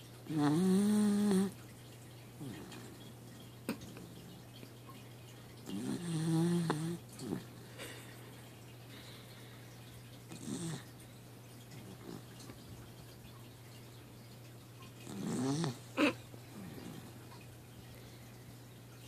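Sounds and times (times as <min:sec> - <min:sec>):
faint steady hum: 0:00.0 - 0:19.0
dog snoring: 0:00.2 - 0:01.6, 0:02.4 - 0:03.0, 0:05.6 - 0:07.6, 0:10.3 - 0:11.0, 0:15.0 - 0:17.1.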